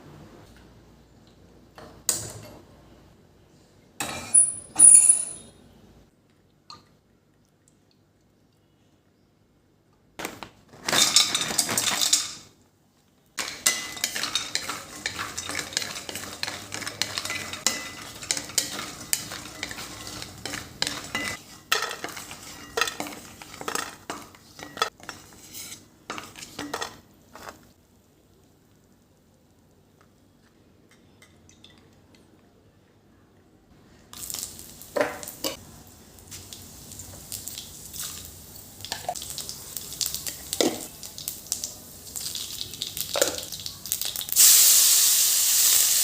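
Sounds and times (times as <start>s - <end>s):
metal spoon scraping cooking pan: 13.4s - 27.6s
frying sizzle: 13.4s - 29.8s, 34.1s - 46.0s.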